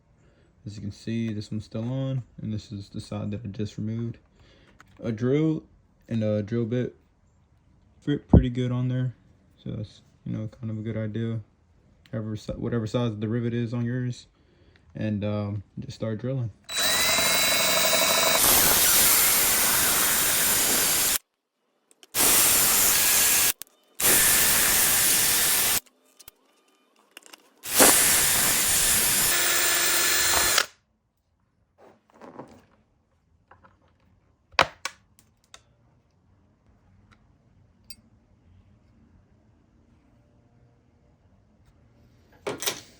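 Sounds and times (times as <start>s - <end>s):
power drill drilling rivet: 16.7s - 21.2s, 22.1s - 25.8s, 27.6s - 30.7s.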